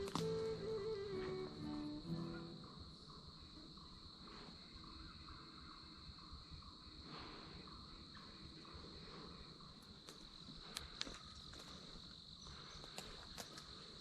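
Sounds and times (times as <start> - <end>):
faint sharp clicks: 0.0 - 0.4, 10.0 - 11.7
insects trilling: 0.0 - 14.0.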